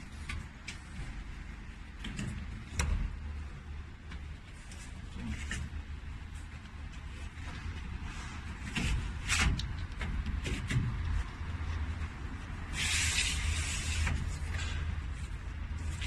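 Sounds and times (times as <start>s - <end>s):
filter sliding hissing rush: 12.7s - 14.4s.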